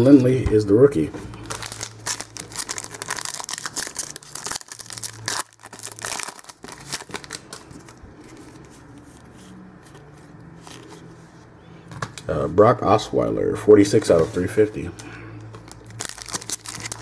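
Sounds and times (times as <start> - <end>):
wrapper crinkling and tearing: 1.4 - 9.0, 15.5 - 17.0.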